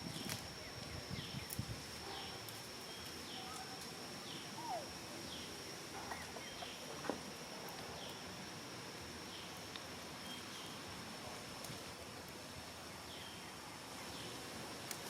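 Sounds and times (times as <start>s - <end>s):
low falling whistle: 4.4s - 5.0s.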